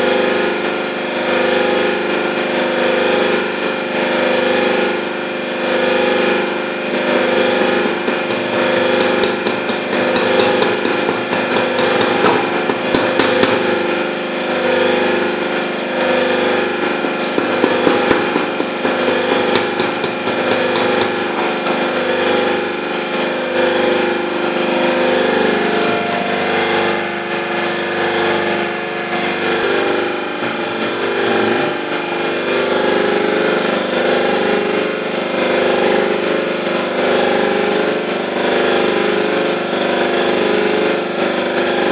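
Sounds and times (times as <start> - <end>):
machinery humming: 2.0 - 32.8.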